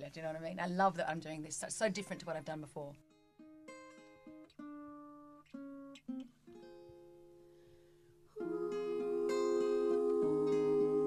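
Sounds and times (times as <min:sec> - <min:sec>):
acoustic guitar strumming: 0:03.1 - 0:11.0
acoustic guitar picking: 0:03.4 - 0:11.0.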